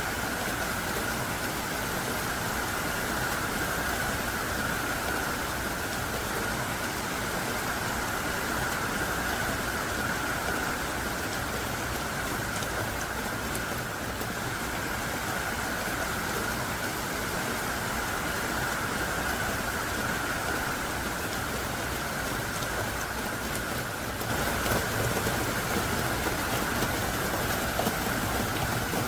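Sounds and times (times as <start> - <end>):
heavy rain hissing: 13.2 - 29.0.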